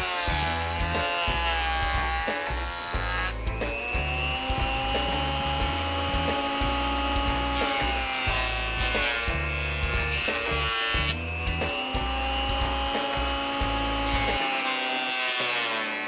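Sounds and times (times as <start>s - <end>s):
background music with steady beat: 0.0s - 16.0s
jointer motor whining: 0.0s - 16.0s.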